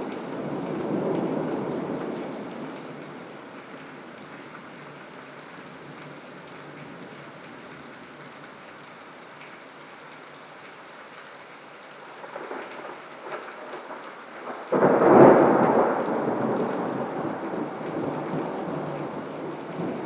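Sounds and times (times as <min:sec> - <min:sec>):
steady rain: 0:00.0 - 0:20.0
thunder clap rumbling: 0:12.2 - 0:20.0.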